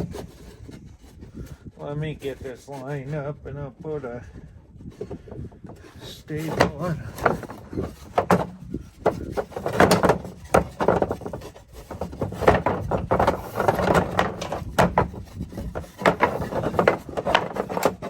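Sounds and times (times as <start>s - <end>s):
wind on microphone: 0.0s - 18.0s
wooden boards knocking: 4.9s - 18.0s.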